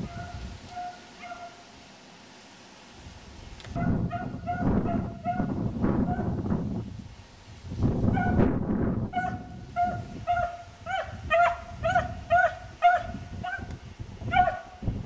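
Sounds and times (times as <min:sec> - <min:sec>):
dog barking: 0:00.0 - 0:01.6, 0:03.8 - 0:06.3, 0:08.1 - 0:08.4, 0:09.2 - 0:13.7, 0:14.3 - 0:14.8.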